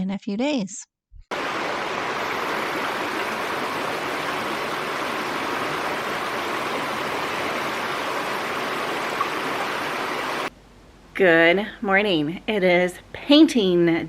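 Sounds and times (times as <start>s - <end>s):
steady rushing noise: 1.3s - 10.5s.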